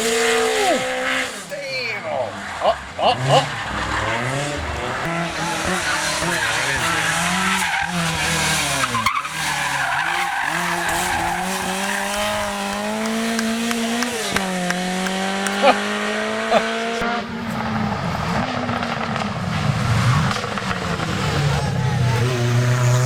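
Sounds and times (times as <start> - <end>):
rally car engine revving: 0.0 - 23.0
tyre and road noise: 0.0 - 23.0
sharp cracks: 10.2 - 15.9.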